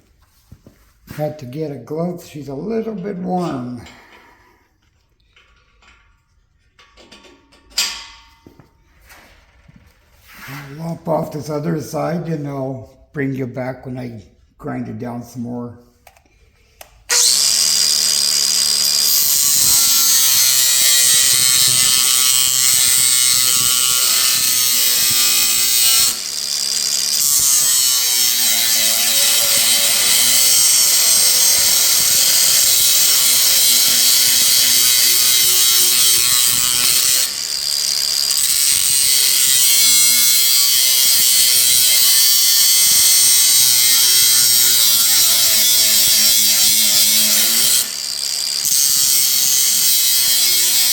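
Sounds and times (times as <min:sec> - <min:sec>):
power grinder grinding metal: 0:17.1 - 0:50.9.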